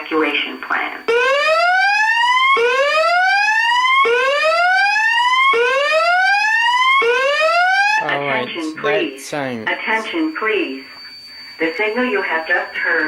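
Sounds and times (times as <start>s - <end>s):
fire alarm whoop tone: 1.1s - 9.0s, 9.7s - 13.0s
recorded evacuation voice message: 8.0s - 10.8s.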